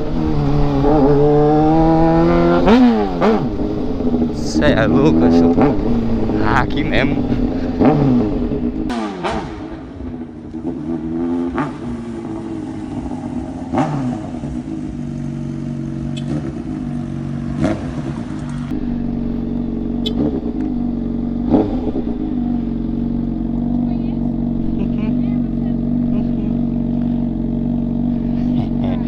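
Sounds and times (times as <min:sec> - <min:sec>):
motorcycle throttle blips: 0:00.0 - 0:29.0
motorcycle engine idling: 0:02.6 - 0:08.9, 0:11.9 - 0:29.0.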